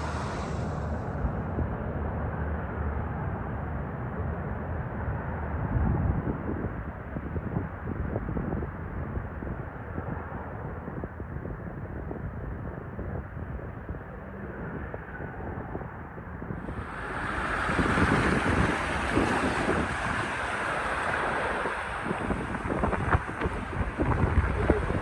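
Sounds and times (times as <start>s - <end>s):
vehicle noise: 0.0s - 1.6s, 16.5s - 25.0s
wind buffeting microphone: 0.0s - 1.8s, 5.4s - 25.0s
rushing floodwater: 16.6s - 25.0s.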